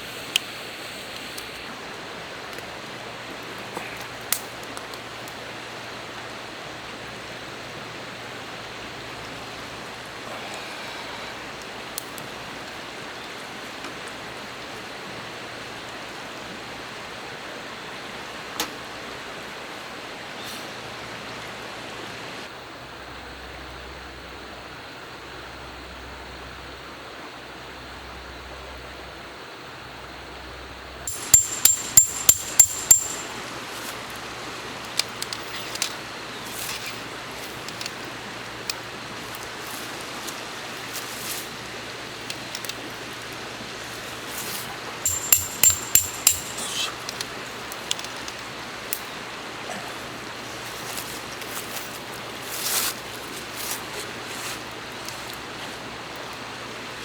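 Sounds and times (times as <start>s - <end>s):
outdoor background hiss: 0.0s - 57.0s
ringing metallic strikes: 31.1s - 33.4s, 45.1s - 46.9s.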